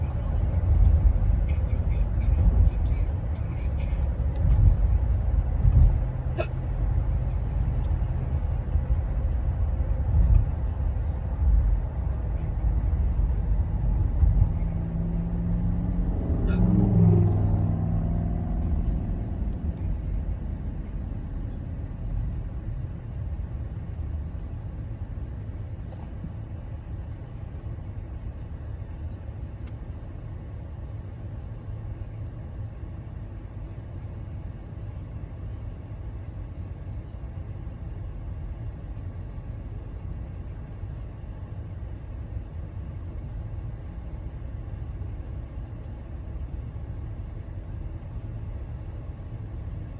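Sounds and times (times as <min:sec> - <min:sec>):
low rumble: 0:00.0 - 0:49.9
person hiccuping: 0:06.4 - 0:06.6.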